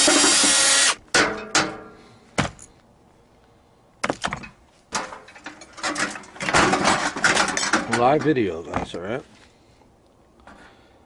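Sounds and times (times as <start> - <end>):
cordless drill running: 0.0 - 1.0
knocks and clatters of parts: 0.0 - 2.7, 4.0 - 9.0.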